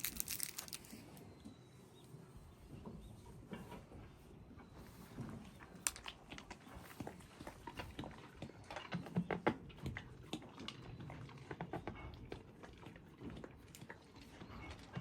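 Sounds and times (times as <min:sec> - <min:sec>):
horse licking and smacking: 0:05.5 - 0:15.0.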